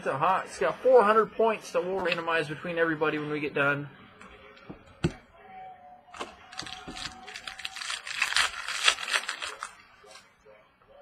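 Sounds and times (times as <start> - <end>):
card wrappers crinkling: 6.2 - 10.3.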